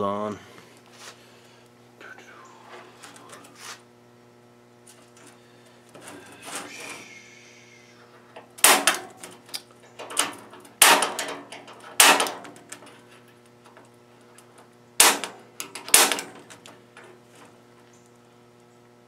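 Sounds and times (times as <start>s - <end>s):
punch striking sheet metal: 8.6s - 9.2s, 10.8s - 12.6s, 15.0s - 16.5s.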